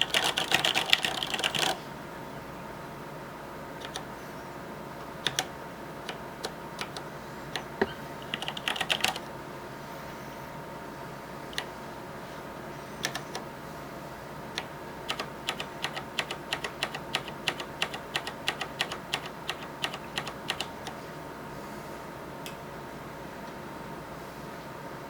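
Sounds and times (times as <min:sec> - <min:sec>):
mechanical keyboard keystrokes: 0:00.0 - 0:01.8, 0:03.8 - 0:04.1, 0:05.2 - 0:09.3, 0:11.5 - 0:11.7, 0:13.0 - 0:13.5, 0:14.6 - 0:21.0.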